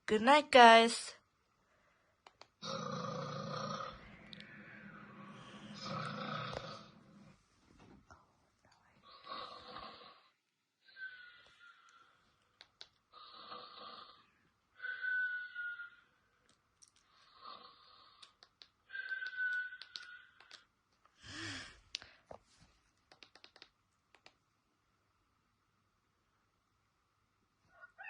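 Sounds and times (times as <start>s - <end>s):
snort: 2.6s - 4.1s, 5.3s - 7.2s, 9.0s - 10.3s, 13.2s - 15.5s, 17.2s - 18.4s
person snoring with whistle: 2.6s - 7.0s, 14.8s - 16.0s, 18.9s - 20.3s.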